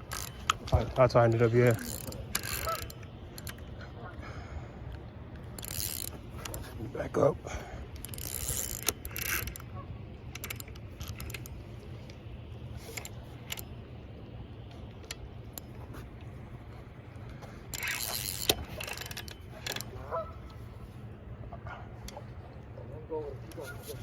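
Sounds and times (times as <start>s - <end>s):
fishing reel ticking clicks: 0.0s - 3.7s, 5.4s - 6.7s, 8.0s - 9.7s, 10.3s - 12.2s, 12.9s - 13.7s, 17.7s - 20.0s.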